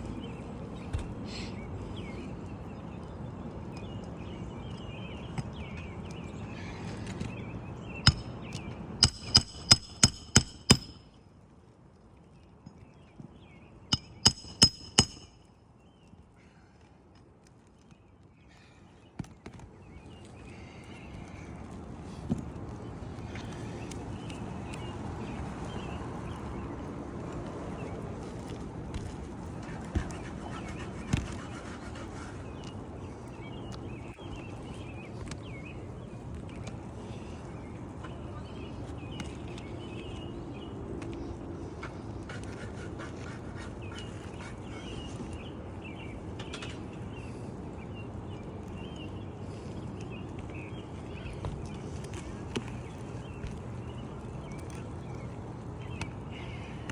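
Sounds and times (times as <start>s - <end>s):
hammer blows with metallic ring: 8.1s - 8.4s, 9.0s - 11.2s, 14.0s - 15.5s
birds chirping and singing: 29.6s - 36.0s, 43.1s - 56.9s.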